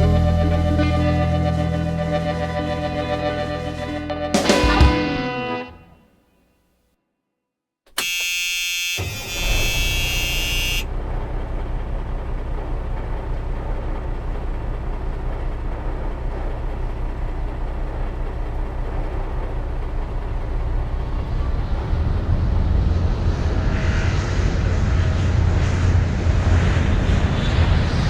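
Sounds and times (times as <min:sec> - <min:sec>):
high buzzing whine: 0:07.9 - 0:15.6
car engine running: 0:08.0 - 0:23.9.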